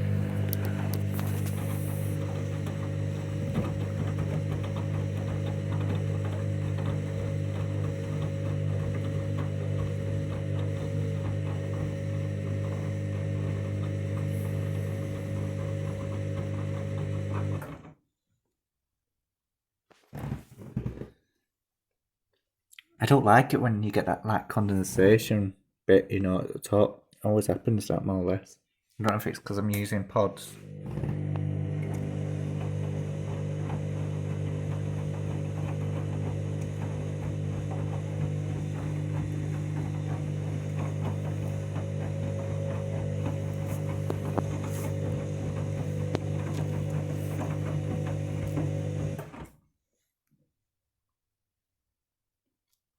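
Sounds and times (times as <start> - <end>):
washing machine drum motor humming: 0.0 - 17.8, 30.6 - 49.4.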